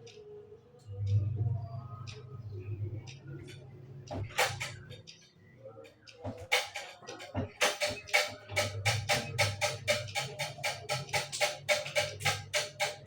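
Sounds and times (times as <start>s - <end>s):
wooden percussive beat: 4.1s - 5.0s, 6.2s - 13.0s.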